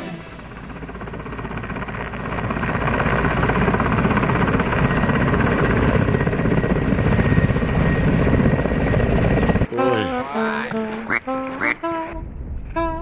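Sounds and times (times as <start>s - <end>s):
helicopter engine and rotor: 0.0s - 10.6s.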